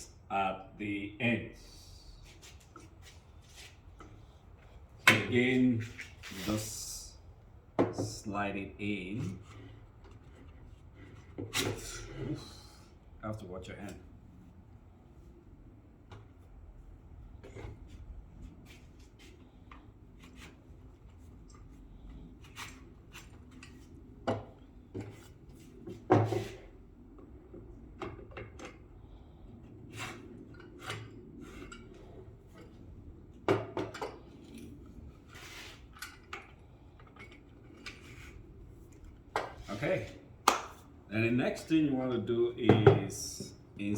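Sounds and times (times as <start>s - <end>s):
parts clicking and scraping: 29.9s - 32.8s, 33.6s - 40.1s.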